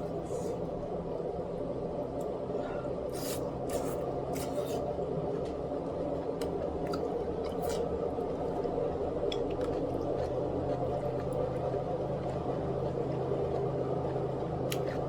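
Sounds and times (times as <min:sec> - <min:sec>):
appliance hum: 0:00.0 - 0:15.0
squishy eating sounds: 0:03.1 - 0:15.0.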